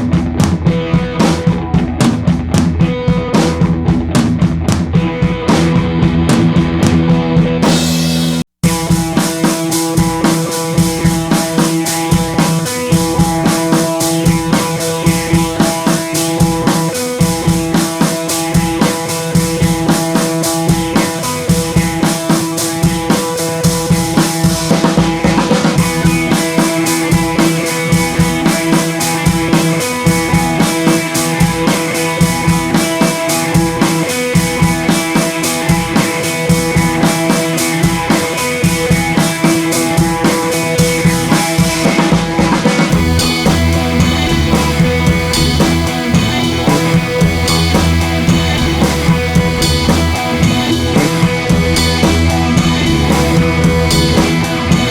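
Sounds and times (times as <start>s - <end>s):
rock music with drum beat: 0.0s - 54.9s.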